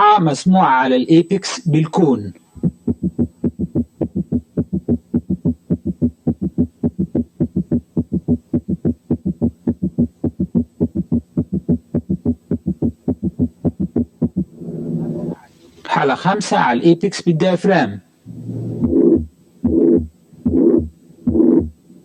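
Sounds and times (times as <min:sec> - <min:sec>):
heartbeat through stethoscope: 0:02.6 - 0:14.5, 0:18.3 - 0:21.8.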